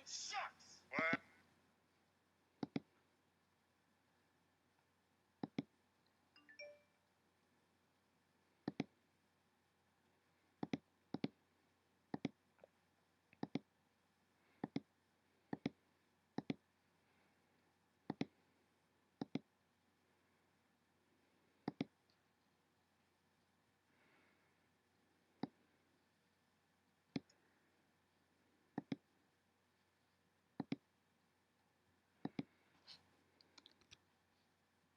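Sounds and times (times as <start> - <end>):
computer mouse clicking: 2.6 - 2.9, 5.4 - 5.7, 8.6 - 8.9, 10.6 - 11.4, 12.1 - 12.4, 13.3 - 13.7, 14.6 - 14.9, 15.5 - 15.8, 16.4 - 16.6, 18.0 - 18.4, 19.2 - 19.5, 21.6 - 22.0, 28.8 - 29.0, 30.6 - 30.8, 32.2 - 32.5.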